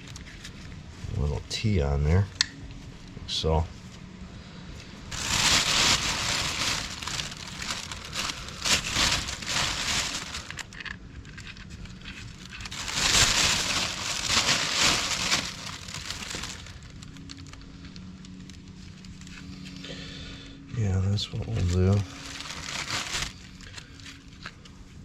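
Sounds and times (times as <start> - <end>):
rustling crinkling handling noise: 0.0 - 1.7, 4.8 - 19.9, 21.1 - 25.0.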